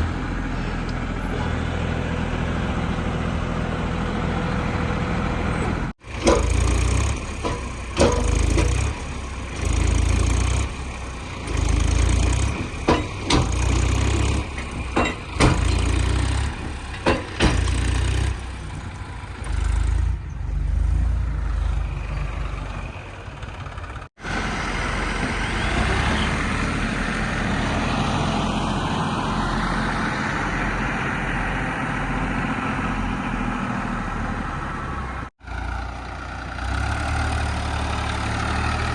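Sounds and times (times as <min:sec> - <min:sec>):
backhoe diesel engine: 0:00.0 - 0:38.9
heavy knocks and clatters: 0:06.0 - 0:10.7, 0:11.6 - 0:18.4.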